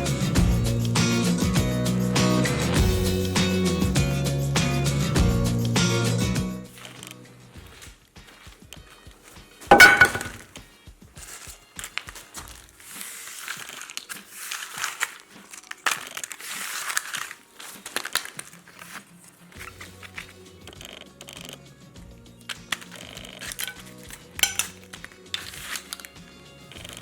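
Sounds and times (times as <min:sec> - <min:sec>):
bat cracking object: 0:09.7 - 0:10.5
crunching and crackling: 0:11.2 - 0:21.6, 0:22.4 - 0:27.0.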